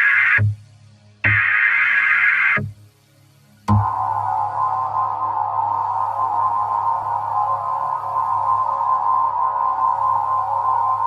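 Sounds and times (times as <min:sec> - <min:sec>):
low hum: 0:00.0 - 0:11.0
synthesized electronic drone: 0:00.0 - 0:11.0.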